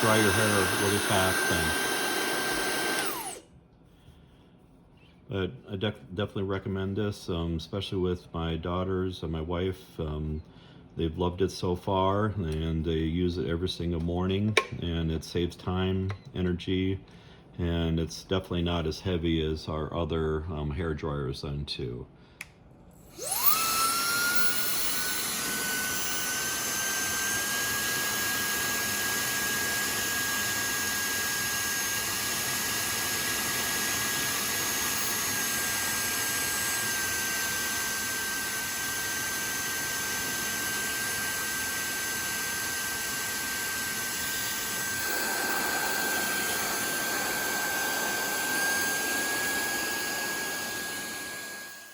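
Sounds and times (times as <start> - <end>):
hair dryer motor whine: 0.0 - 3.4, 23.0 - 51.9.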